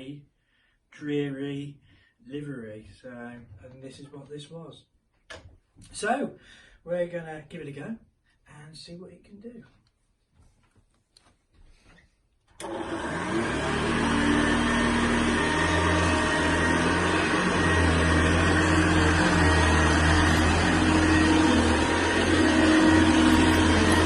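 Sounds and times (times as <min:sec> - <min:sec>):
vacuum cleaner motor humming: 0:12.6 - 0:24.0.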